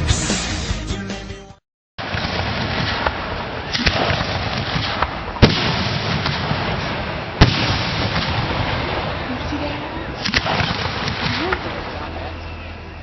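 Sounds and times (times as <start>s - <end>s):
fireworks bursting: 2.0s - 12.0s
background hubbub: 8.1s - 13.0s.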